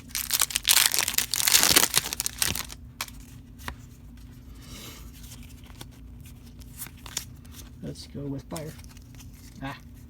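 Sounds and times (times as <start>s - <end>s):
foil wrapper crinkling: 0.0s - 3.3s.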